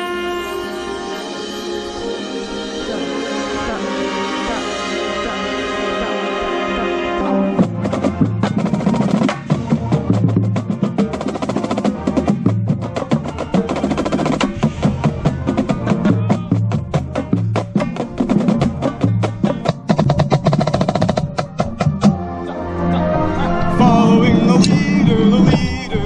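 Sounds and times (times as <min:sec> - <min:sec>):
marching band chord: 0:00.0 - 0:19.6, 0:21.8 - 0:26.0
snare and tenor drums: 0:06.2 - 0:22.2.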